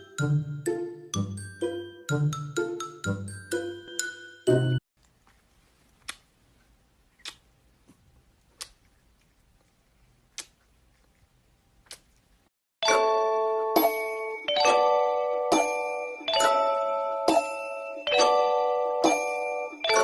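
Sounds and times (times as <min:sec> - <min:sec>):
chiming music: 0:00.0 - 0:04.8, 0:12.8 - 0:20.0.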